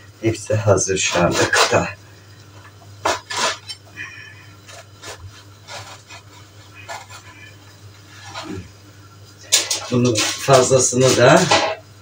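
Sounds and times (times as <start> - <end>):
steady low hum: 0.0 - 12.0
scraping and rubbing strokes: 3.0 - 3.8, 4.7 - 7.5, 8.1 - 8.7
dishes and utensils clattering: 3.0 - 4.0, 9.4 - 11.8.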